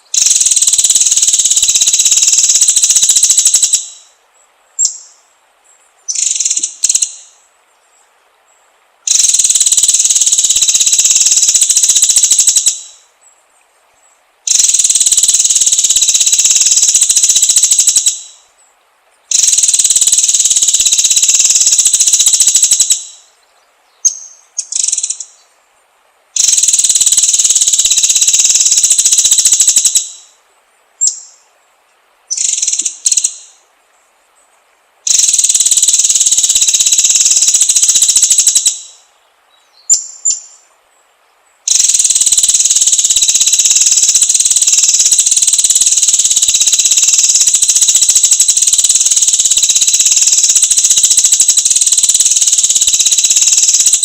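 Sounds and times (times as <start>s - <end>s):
bird singing rapid high phrases: 0.1s - 4.1s, 4.8s - 5.2s, 6.1s - 7.4s, 9.1s - 13.0s, 14.5s - 18.4s, 19.3s - 23.3s, 24.0s - 25.4s, 26.4s - 30.3s, 32.3s - 33.6s, 35.1s - 40.6s, 41.7s - 54.0s.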